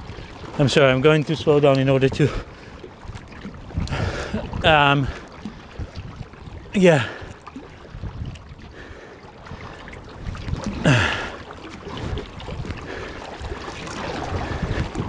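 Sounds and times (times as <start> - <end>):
paddle splashing in water: 0.0 - 15.0
wind on microphone: 2.0 - 15.0
person grunting: 10.8 - 11.3.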